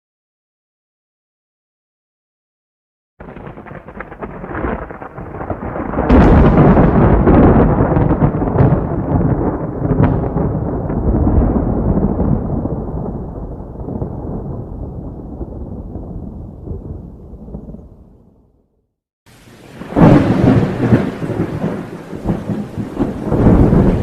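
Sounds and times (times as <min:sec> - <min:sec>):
thunderclap: 0:03.2 - 0:18.6, 0:19.3 - 0:24.0.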